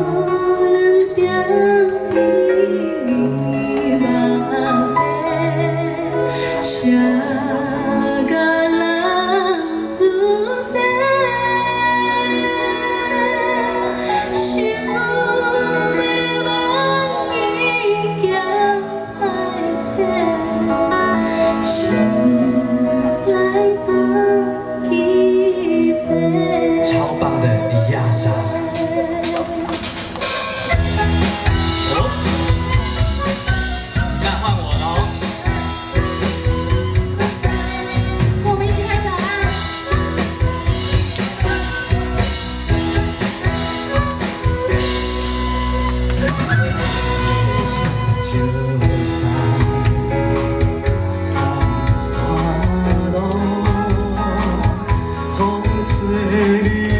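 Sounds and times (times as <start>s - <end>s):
woman singing: 0.0s - 34.0s, 35.4s - 56.9s
band accompaniment: 0.0s - 56.9s
drum kit beat: 28.7s - 56.9s.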